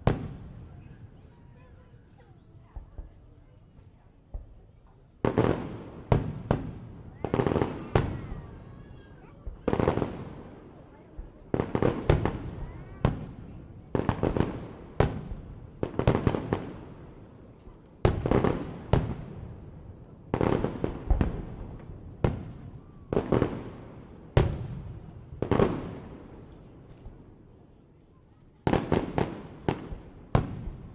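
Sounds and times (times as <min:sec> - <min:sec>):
fireworks bangs with rumbling echo: 0:00.0 - 0:27.6, 0:28.6 - 0:30.9.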